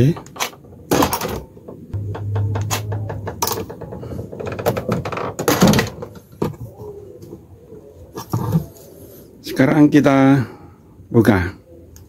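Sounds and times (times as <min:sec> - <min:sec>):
door lock clicks and knocks: 0:00.0 - 0:06.2
door clattering thunk: 0:00.0 - 0:06.6.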